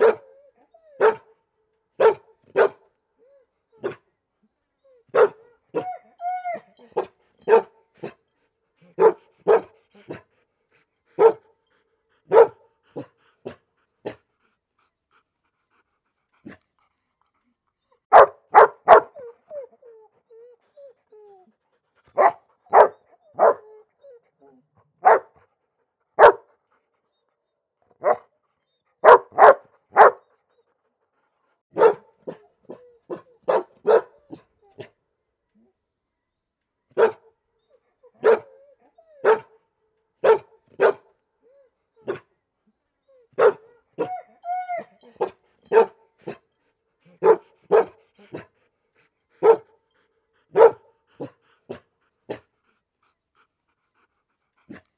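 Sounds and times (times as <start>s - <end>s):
dog barking: 0.0s - 0.2s, 1.0s - 1.2s, 2.0s - 2.8s, 5.1s - 5.4s, 7.5s - 7.8s, 9.0s - 9.7s, 11.2s - 11.4s, 12.3s - 12.6s, 18.1s - 19.2s, 22.2s - 23.6s, 25.0s - 25.3s, 26.2s - 26.5s, 28.0s - 28.3s, 29.0s - 30.2s, 31.7s - 32.4s, 33.5s - 34.2s, 37.0s - 37.2s, 38.2s - 38.5s, 39.2s - 39.5s, 40.2s - 41.0s, 43.4s - 43.7s, 45.2s - 46.0s, 47.2s - 48.0s, 49.4s - 49.7s, 50.5s - 51.3s
dog whining: 43.6s - 45.8s.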